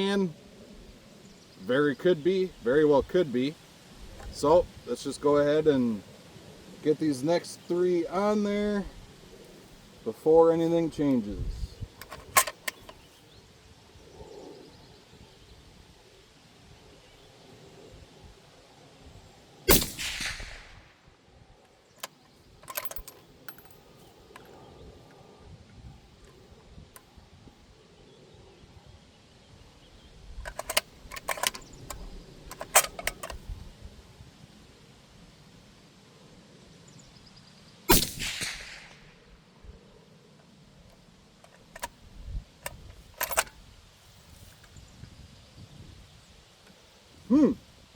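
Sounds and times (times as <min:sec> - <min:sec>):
metallic clicks and clinks: 0:12.0 - 0:13.0, 0:22.0 - 0:24.5, 0:30.4 - 0:33.4, 0:41.4 - 0:41.9, 0:42.6 - 0:43.6
suppressed rifle shot: 0:19.7 - 0:20.9, 0:37.9 - 0:39.2.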